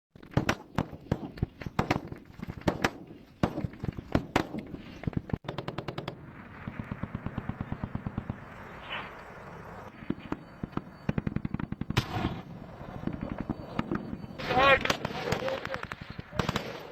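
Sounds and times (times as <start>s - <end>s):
gunfire shots and automatic bursts: 0.2s - 16.9s.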